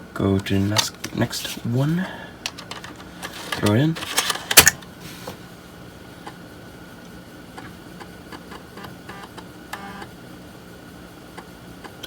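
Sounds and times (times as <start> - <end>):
low drive hum: 0.0 - 12.0
floppy drive stepper motor ticking: 7.0 - 10.2.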